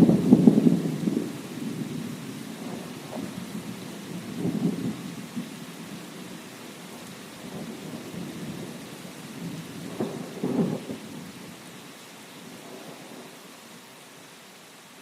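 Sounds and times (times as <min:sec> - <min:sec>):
low rolling thunder: 0:00.0 - 0:11.6
steady rain hiss: 0:00.0 - 0:15.0.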